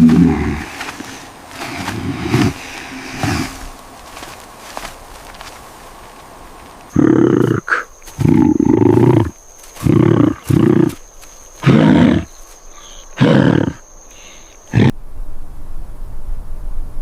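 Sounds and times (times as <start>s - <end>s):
large animal roaring: 6.9s - 11.0s, 11.6s - 12.3s.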